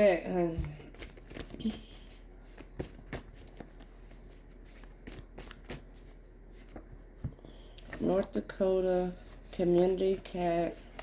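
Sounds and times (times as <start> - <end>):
cards being shuffled: 0.5 - 6.9.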